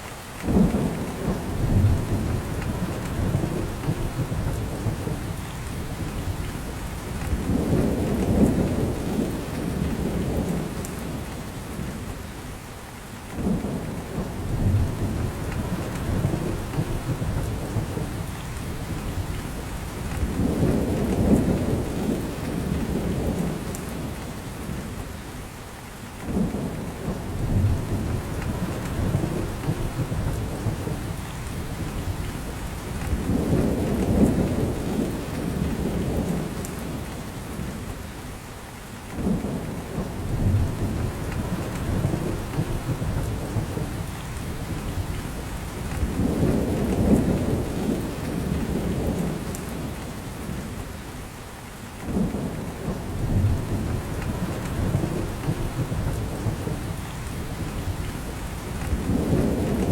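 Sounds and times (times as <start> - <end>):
rain falling in forest: 0.0 - 59.9.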